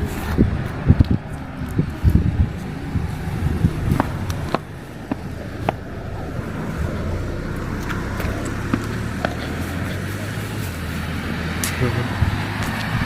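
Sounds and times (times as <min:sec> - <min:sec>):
traffic noise: 0:00.0 - 0:13.0
vehicle engine humming: 0:00.0 - 0:13.0.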